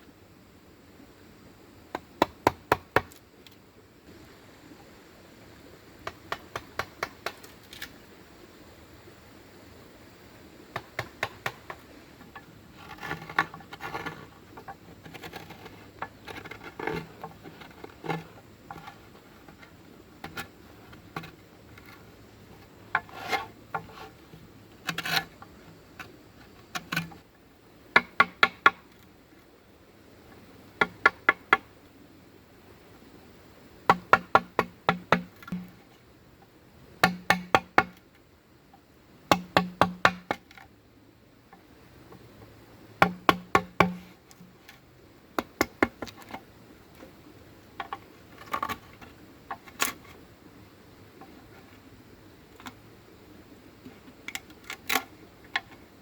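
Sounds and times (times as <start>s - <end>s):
sharp strikes on hollow bamboo: 2.0s - 3.2s, 6.0s - 7.5s, 10.8s - 11.8s, 28.0s - 28.8s, 30.8s - 31.7s, 33.9s - 35.8s, 37.0s - 38.0s, 39.3s - 40.6s, 43.0s - 44.2s
knocking and scraping on bamboo: 6.0s - 8.0s, 10.7s - 27.2s, 27.9s - 29.1s, 30.8s - 31.7s, 33.9s - 36.0s, 37.0s - 38.1s, 39.3s - 40.7s, 41.5s - 47.2s, 47.8s - 50.2s, 53.9s - 55.9s.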